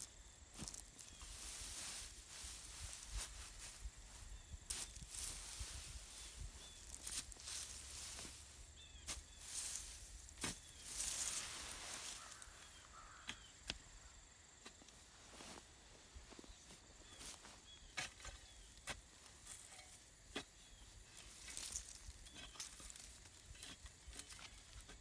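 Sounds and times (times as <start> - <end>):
leaves rustling: 0.0 - 13.2.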